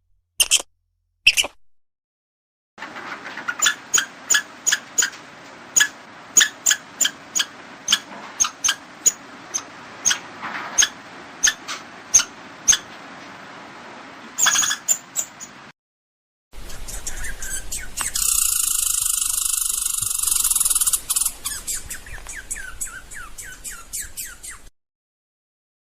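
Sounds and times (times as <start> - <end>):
squirrel chirping: 1.3 - 1.6, 5.8 - 10.2, 10.8 - 11.6, 16.6 - 24.7.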